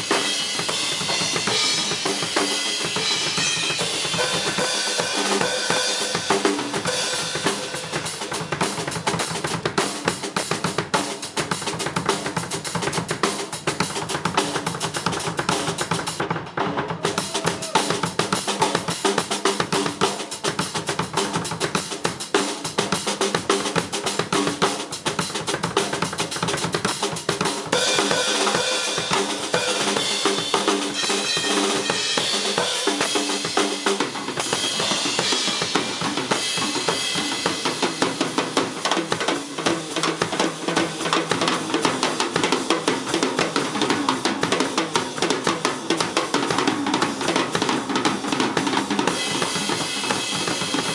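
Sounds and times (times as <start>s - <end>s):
drum kit solo: 0.0s - 50.9s.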